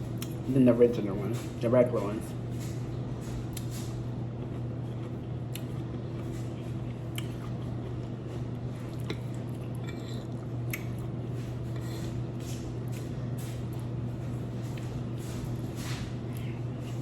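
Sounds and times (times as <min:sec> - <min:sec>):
steady low hum: 0:00.0 - 0:17.0
wet chewing and crunching: 0:03.2 - 0:11.2.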